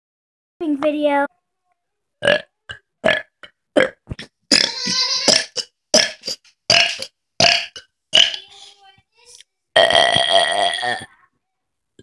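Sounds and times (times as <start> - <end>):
person burping: 2.2 - 8.4, 9.8 - 11.1.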